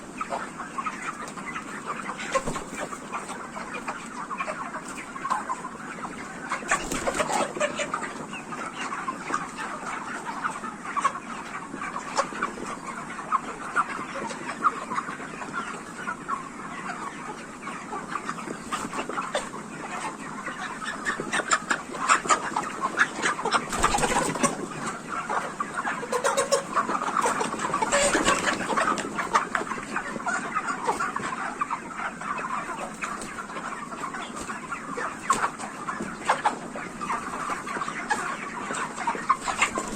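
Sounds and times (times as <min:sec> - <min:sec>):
chickens clucking: 0:00.0 - 0:39.9.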